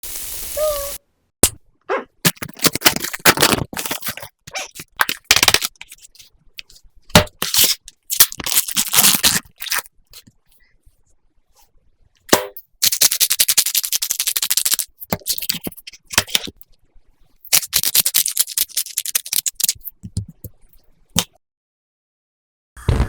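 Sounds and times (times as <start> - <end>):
meat sizzling in a frying pan: 0.0 - 1.0.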